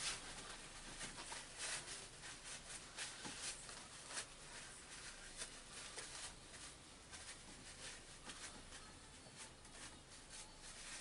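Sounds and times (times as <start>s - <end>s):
faint scratching and rubbing: 0.0s - 11.0s.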